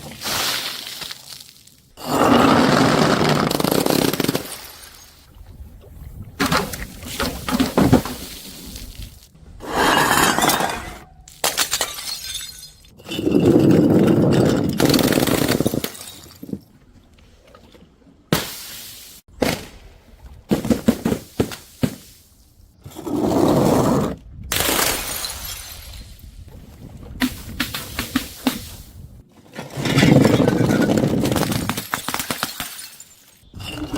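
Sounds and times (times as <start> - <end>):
glass bottles smashing: 11.4 - 16.6, 29.8 - 33.9
glass clinking and rattling: 32.6 - 33.9.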